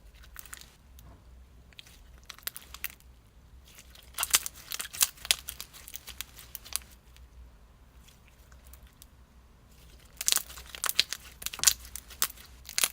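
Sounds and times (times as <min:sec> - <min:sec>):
slime squished by hand: 0:09.7 - 0:12.9.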